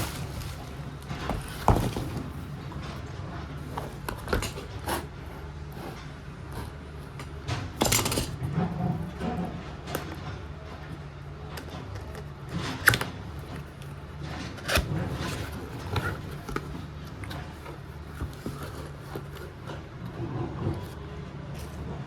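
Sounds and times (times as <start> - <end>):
soft rustles and taps: 0.0 - 4.8.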